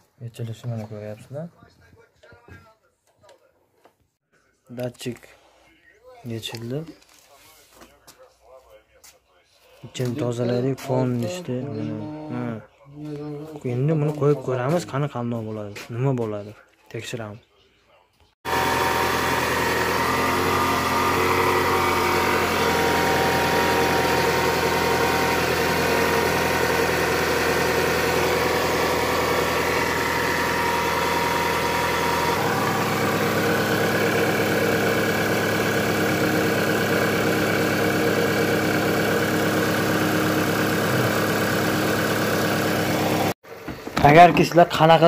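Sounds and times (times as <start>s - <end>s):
car engine idling: 18.5s - 43.3s.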